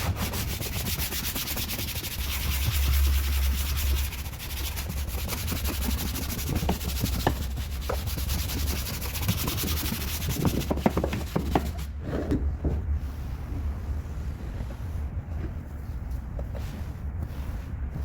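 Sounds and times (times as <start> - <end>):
brush scrubbing car interior: 0.0 - 11.9
low steady hum: 0.0 - 18.0.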